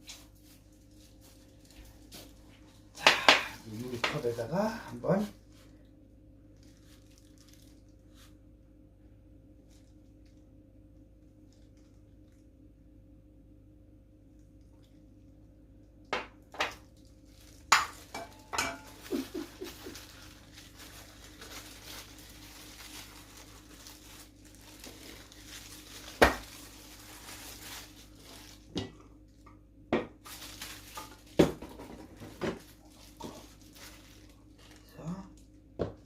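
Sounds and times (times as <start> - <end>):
utensil clinking against pot and glass: 17.7 - 19.0.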